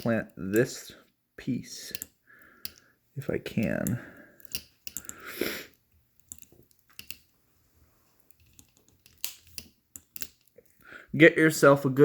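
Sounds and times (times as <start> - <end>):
soft clicks of hand tools: 1.9 - 2.9, 3.6 - 5.2
sharp clicks of wire cutters: 3.6 - 5.2.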